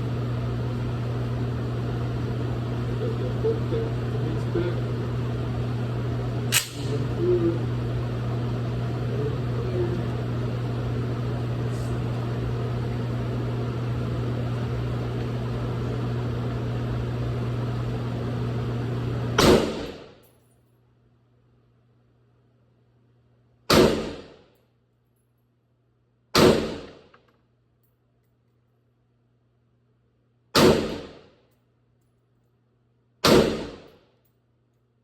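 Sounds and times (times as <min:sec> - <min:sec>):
low mechanical hum: 0:00.0 - 0:35.0
sharp click: 0:06.5 - 0:07.0.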